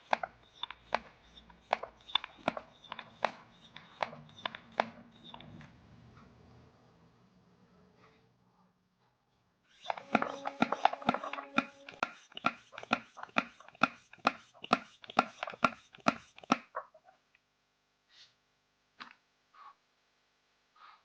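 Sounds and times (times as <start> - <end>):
sharp taps: 0.1 - 5.0.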